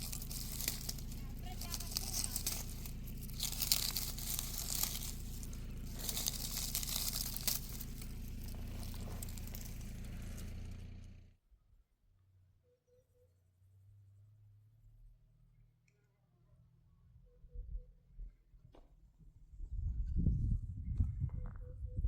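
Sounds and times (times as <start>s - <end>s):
rustling crackling noise: 0.0s - 11.0s
low hum: 0.0s - 11.3s.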